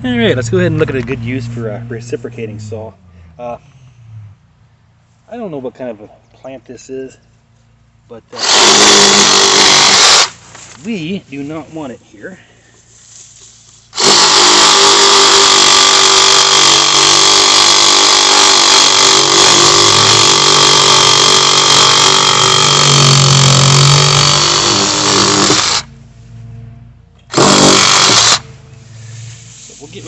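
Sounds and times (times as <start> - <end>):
reciprocating saw cutting wood: 8.4 - 10.4, 13.9 - 25.9, 27.3 - 28.5.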